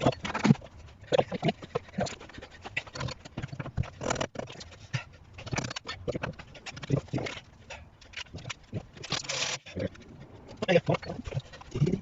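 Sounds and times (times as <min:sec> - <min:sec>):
tools and metal parts knocking: 0:00.0 - 0:04.8.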